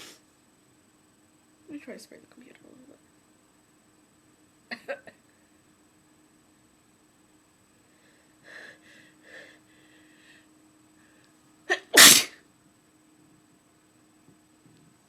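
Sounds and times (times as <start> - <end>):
woman sneezing: 11.7 - 12.4.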